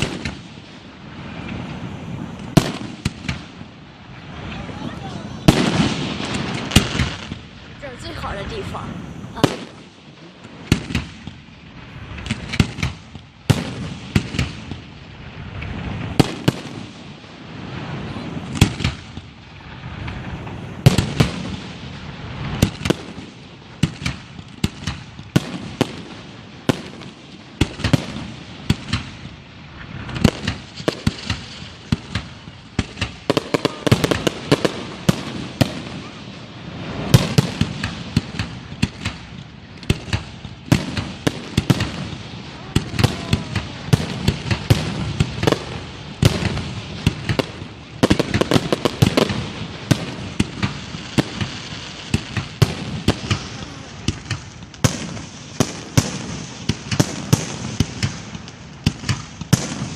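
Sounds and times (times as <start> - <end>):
low rumble of echoing blasts: 0.0 - 30.8
fireworks bangs and crackling: 0.0 - 59.9.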